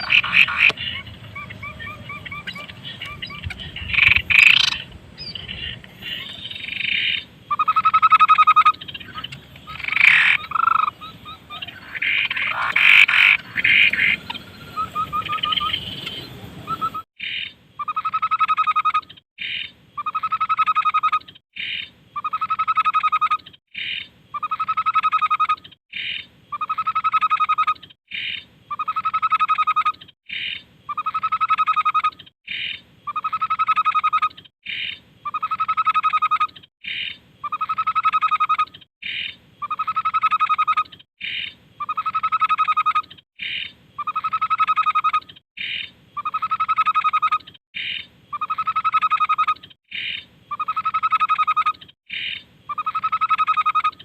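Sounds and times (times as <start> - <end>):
bird rattling call: 0.0 - 7.2
babbler calling: 0.0 - 54.0.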